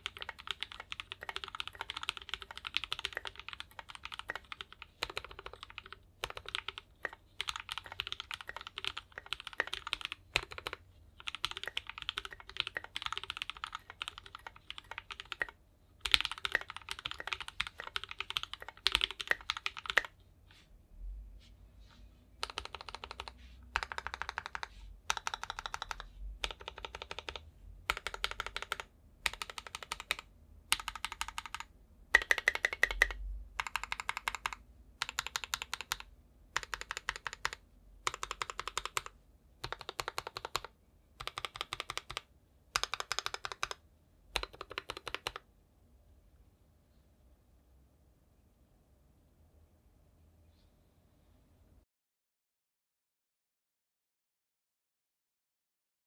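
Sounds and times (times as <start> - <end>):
mechanical keyboard typing: 0.0 - 20.1, 22.4 - 43.8, 44.4 - 45.4.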